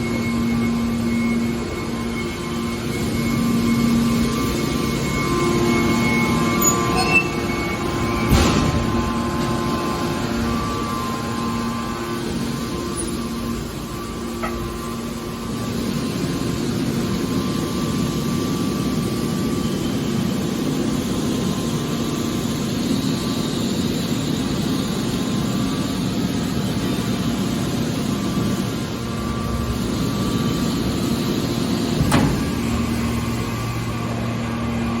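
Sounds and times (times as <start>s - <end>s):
car baler machine hum: 0.0s - 23.1s, 23.8s - 35.0s
machine knocking: 14.4s - 15.0s, 31.8s - 33.8s.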